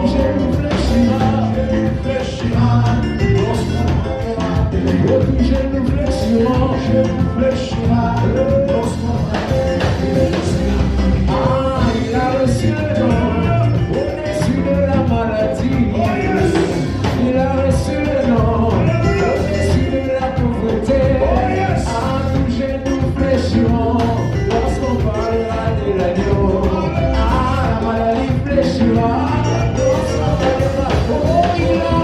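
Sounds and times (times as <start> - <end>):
person singing: 0.0 - 32.0
steady drum beat: 0.0 - 32.0
worship band playing: 0.0 - 32.0.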